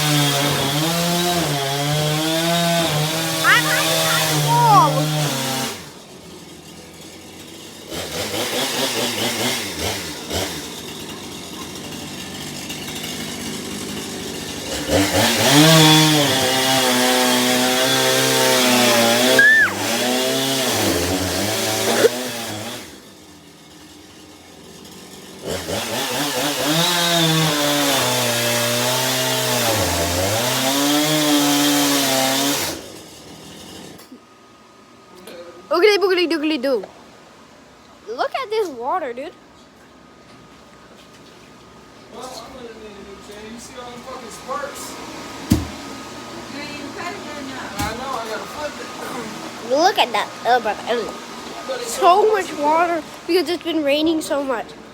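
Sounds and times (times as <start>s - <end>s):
chainsaw revving: 0.0s - 6.0s, 6.7s - 34.0s, 48.8s - 54.5s.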